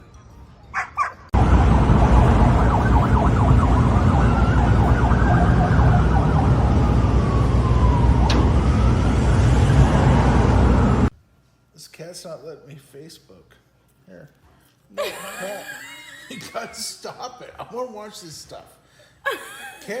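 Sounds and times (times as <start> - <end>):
siren-like wail: 1.3 - 11.1.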